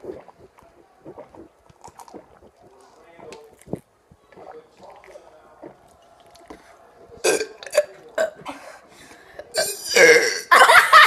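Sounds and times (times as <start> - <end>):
person burping: 7.2 - 8.6, 9.5 - 10.6.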